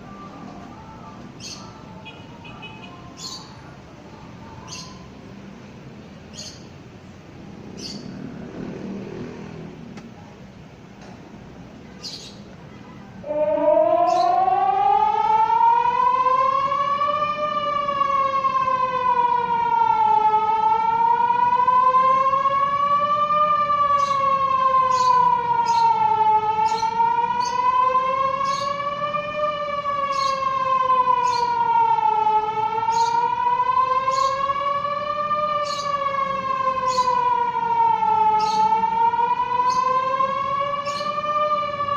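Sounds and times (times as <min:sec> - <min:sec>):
warning siren wailing: 0:00.0 - 0:03.6, 0:13.2 - 0:41.9.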